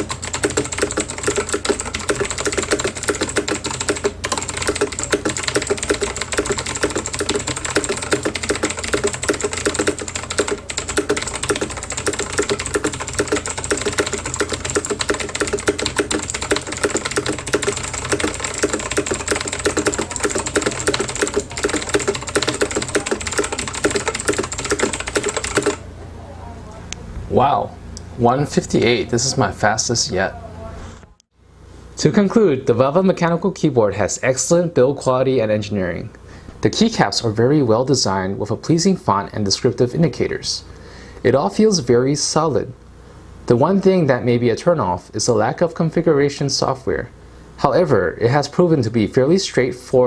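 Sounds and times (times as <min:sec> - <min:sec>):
fast clicky keyboard typing: 0:00.0 - 0:25.8.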